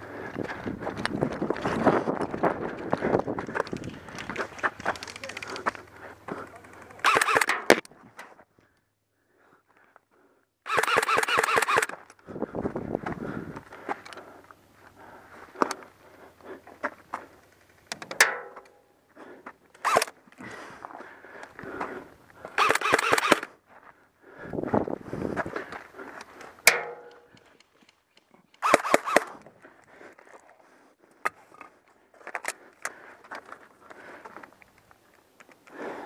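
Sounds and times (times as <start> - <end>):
gear rustling: 0.2 - 7.5
footsteps: 0.2 - 8.5
sharp clicks and cracks: 0.4 - 8.3, 10.7 - 12.2, 13.6 - 14.5, 15.5 - 15.9, 17.1 - 18.8, 19.7 - 20.6, 22.5 - 23.5, 25.6 - 30.1, 31.2 - 36.0
short bursts of noise: 7.0 - 7.5, 10.7 - 12.0, 22.6 - 23.5.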